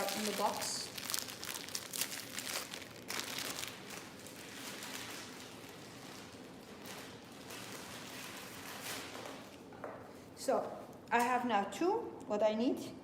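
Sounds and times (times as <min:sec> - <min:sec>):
hair rollers crinkling and rustling: 0:00.0 - 0:09.6.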